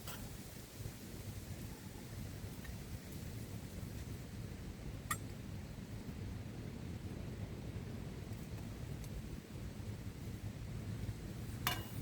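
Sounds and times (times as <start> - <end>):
strong wind rumble: 0.0 - 12.0.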